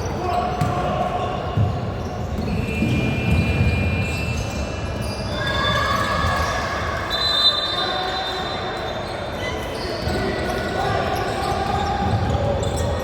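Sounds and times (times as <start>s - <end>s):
basketball bouncing on court: 0.5s - 4.0s.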